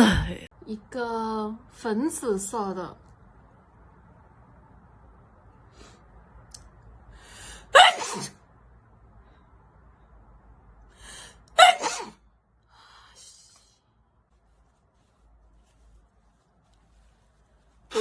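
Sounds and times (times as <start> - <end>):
quick in-breath: 7.1 - 7.7
woman sneezing: 7.7 - 8.4, 11.6 - 12.2.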